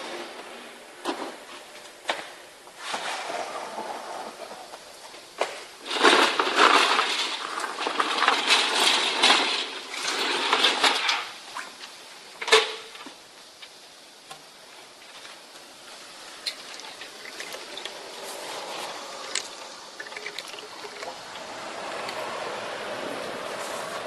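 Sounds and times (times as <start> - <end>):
vacuum sucking rattling debris: 5.8 - 11.4, 15.4 - 24.0.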